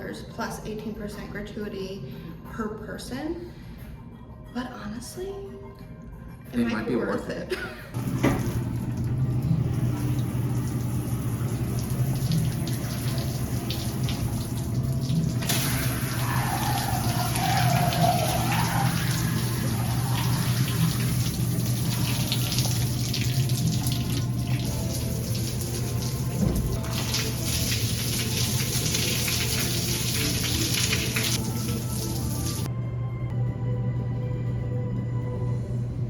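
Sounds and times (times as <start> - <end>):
running water hiss: 9.8 - 32.7.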